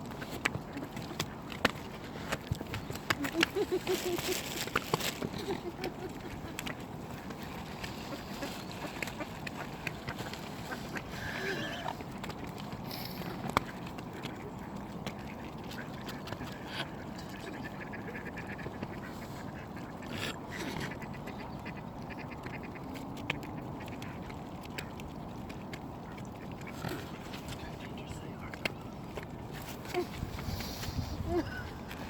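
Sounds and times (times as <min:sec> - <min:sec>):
ducks quacking: 0:14.3 - 0:23.0.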